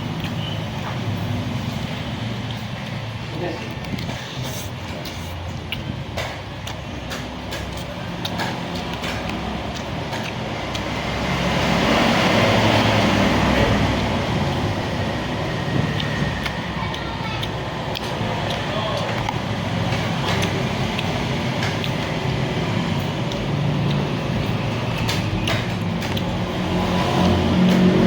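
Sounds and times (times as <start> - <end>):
road traffic: 0.0 - 28.0
vehicle passing: 7.8 - 28.0.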